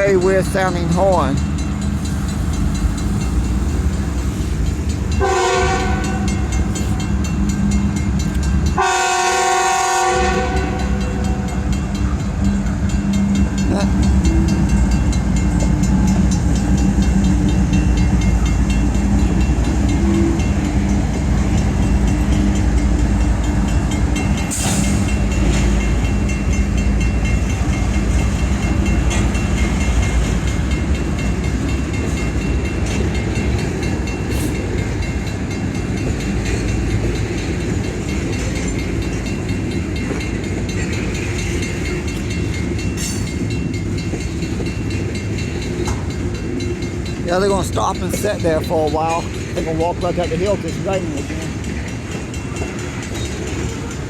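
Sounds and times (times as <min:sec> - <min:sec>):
train rumbling past: 0:00.0 - 0:54.0
train horn blasts: 0:05.2 - 0:06.5, 0:08.8 - 0:11.5.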